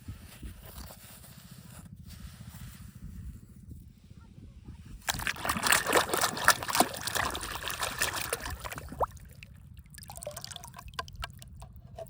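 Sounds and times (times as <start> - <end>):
water splashing and trickling: 5.0 - 12.0.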